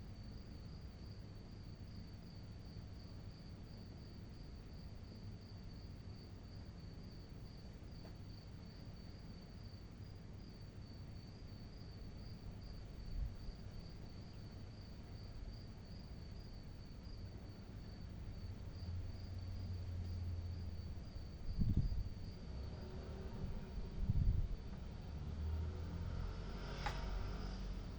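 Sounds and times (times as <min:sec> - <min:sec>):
low background rumble: 0:00.0 - 0:27.9
crickets trilling: 0:00.1 - 0:27.9.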